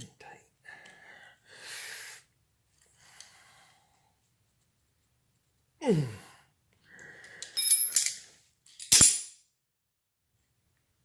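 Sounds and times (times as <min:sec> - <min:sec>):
small metal parts clinking: 0:07.4 - 0:09.4
metallic ring: 0:07.6 - 0:08.2, 0:08.8 - 0:09.3.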